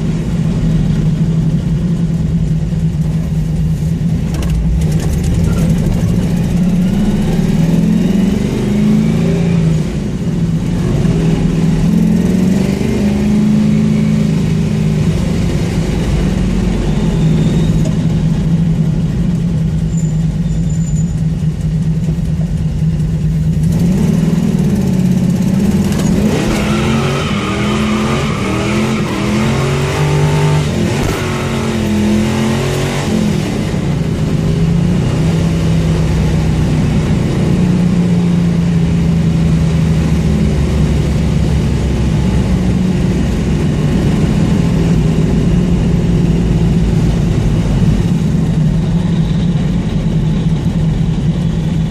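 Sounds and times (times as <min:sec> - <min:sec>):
car engine with exhaust leak: 0:00.0 - 0:51.9.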